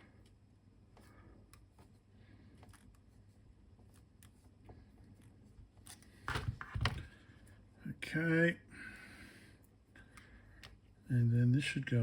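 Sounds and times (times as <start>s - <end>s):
small clicks and handling noises: 0.1s - 7.6s, 9.6s - 11.0s.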